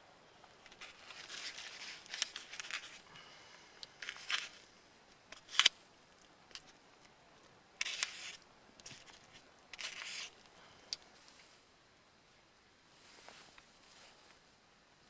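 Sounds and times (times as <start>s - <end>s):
rustling scrapes: 0.7s - 3.1s, 7.8s - 10.4s, 12.9s - 14.4s.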